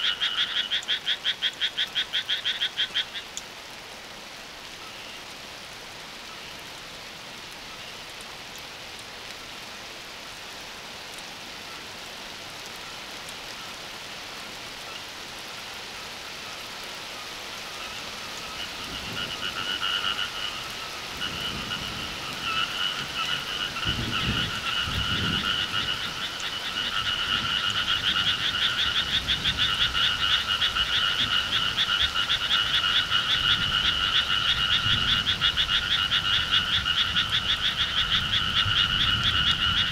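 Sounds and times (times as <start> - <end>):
frogs calling in pulsed trills: 0.0 - 3.4, 17.6 - 39.9
rain hiss: 0.0 - 39.9.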